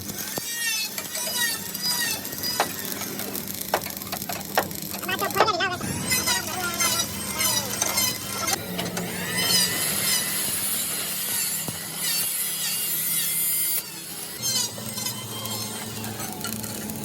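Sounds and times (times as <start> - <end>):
low hum: 5.7 - 11.1
tool scraping on steel: 5.8 - 15.9.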